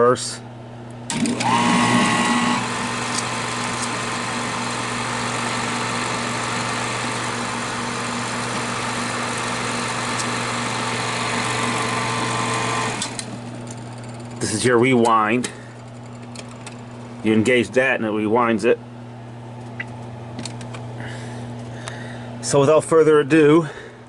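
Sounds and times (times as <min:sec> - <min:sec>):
film projector whirring: 0:01.0 - 0:17.4.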